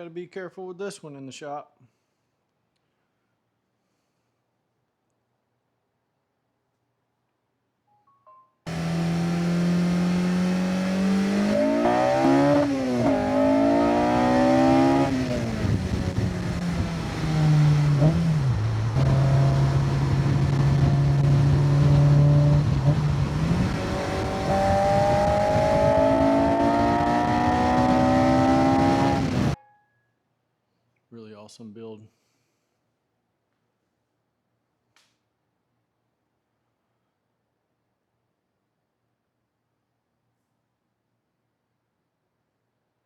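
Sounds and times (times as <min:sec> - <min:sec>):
car engine revving under load: 0:08.7 - 0:29.6.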